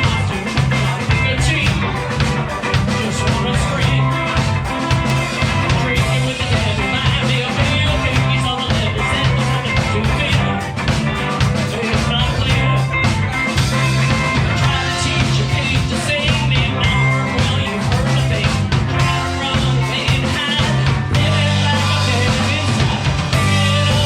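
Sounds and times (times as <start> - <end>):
rock band playing live: 0.0 - 24.0.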